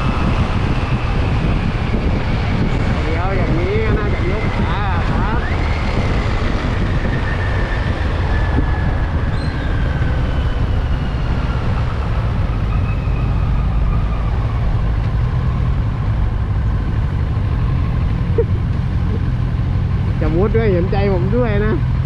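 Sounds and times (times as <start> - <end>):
motorcycle engine: 0.0 - 22.0
wind and road rush: 0.0 - 22.0.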